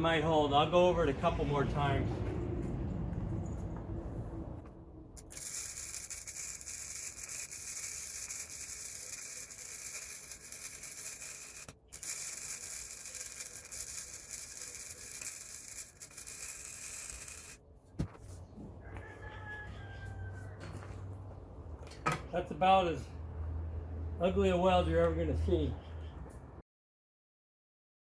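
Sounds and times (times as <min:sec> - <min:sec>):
welding arc crackling and sizzling: 0:05.2 - 0:17.6.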